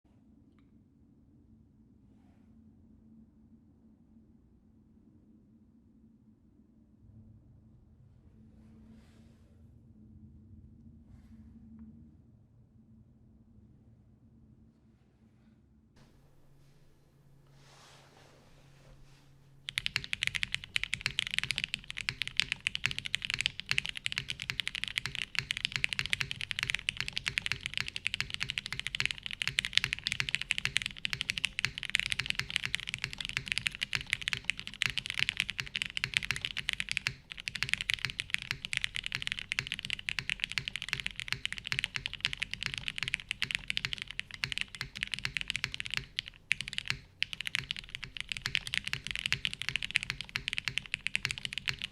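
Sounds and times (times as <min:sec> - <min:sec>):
fast mechanical keyboard typing: 0:19.6 - 0:51.9.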